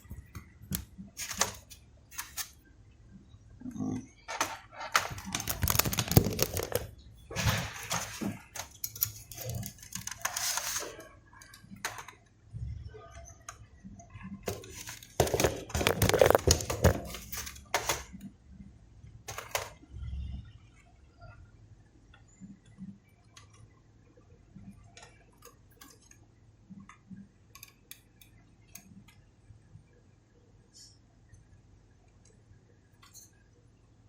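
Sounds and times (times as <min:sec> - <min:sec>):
small plastic and metal parts rattling: 0:00.0 - 0:02.6, 0:04.3 - 0:12.2, 0:14.4 - 0:18.2, 0:19.3 - 0:19.8.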